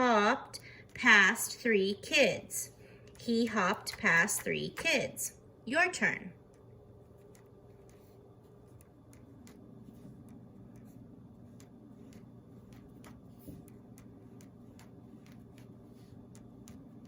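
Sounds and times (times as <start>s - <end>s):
low steady hum: 0.0s - 17.0s
faint irregular clicks: 2.8s - 4.3s, 6.4s - 17.0s.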